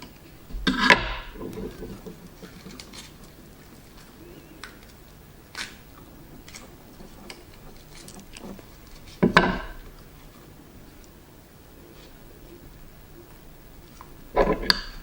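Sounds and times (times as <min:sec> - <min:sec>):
loud sudden sound: 0:00.5 - 0:01.5.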